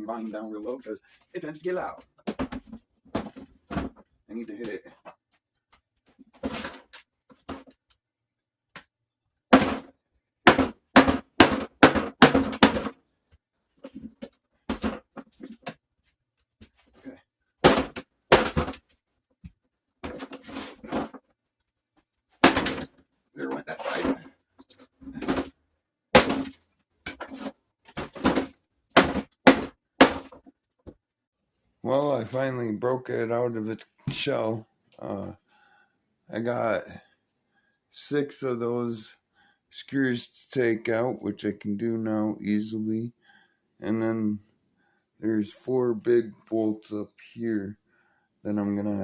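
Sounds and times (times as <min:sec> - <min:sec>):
hard blows on plastic housing: 0:09.5 - 0:13.0, 0:26.1 - 0:30.5.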